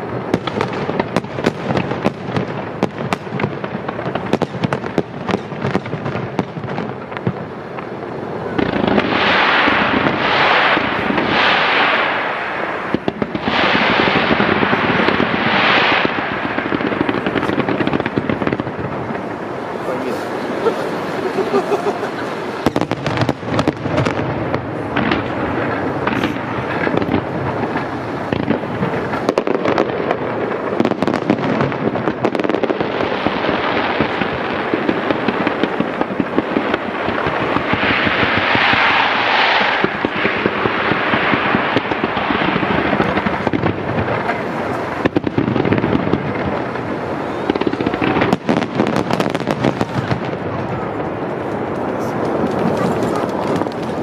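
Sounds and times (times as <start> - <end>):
firework shells bursting: 34.0 - 54.0.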